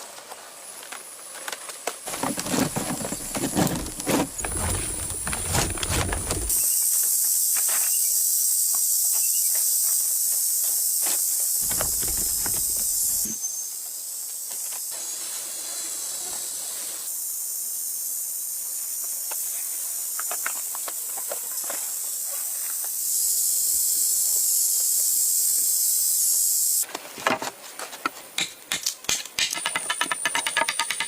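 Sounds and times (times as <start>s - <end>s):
forest insects chorus: 0.0s - 26.9s
hands knocking and rustling: 11.6s - 13.3s.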